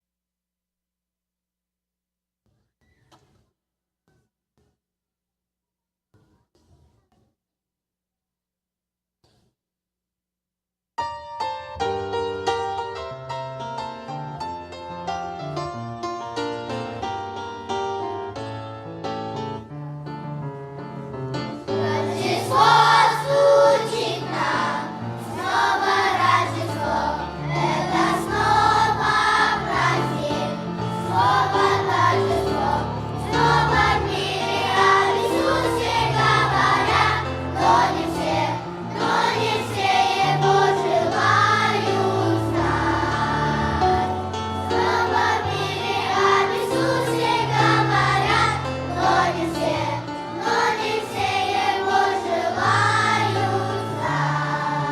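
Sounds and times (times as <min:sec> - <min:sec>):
piano accompaniment: 0:11.0 - 0:54.9
children's choir singing: 0:21.7 - 0:54.9.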